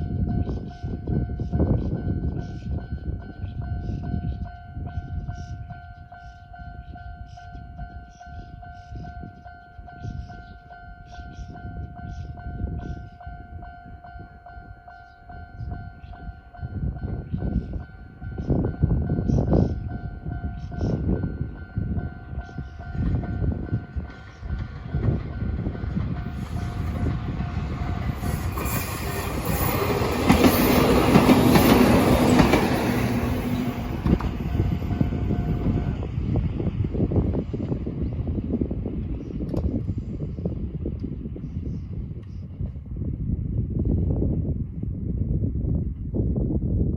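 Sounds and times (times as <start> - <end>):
train rumbling past: 0.0 - 46.2
fast electronic crossing bell: 25.4 - 36.0.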